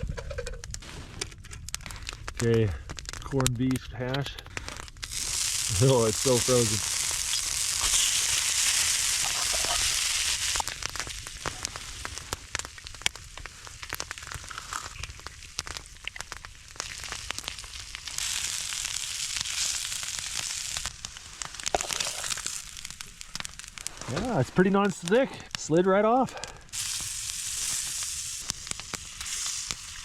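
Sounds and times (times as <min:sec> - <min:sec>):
pops and crackles: 0:00.0 - 0:30.0
food sizzling on griddle: 0:04.6 - 0:30.0.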